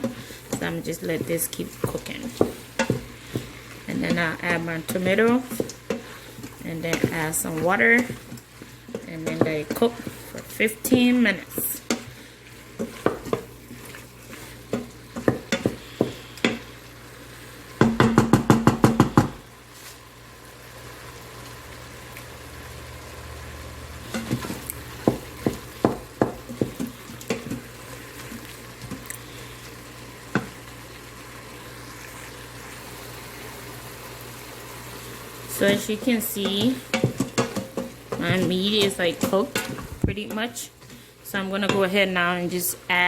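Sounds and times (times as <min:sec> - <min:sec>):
meat sizzling: 0:00.0 - 0:43.0
utensil knocking metal pot: 0:17.8 - 0:19.4.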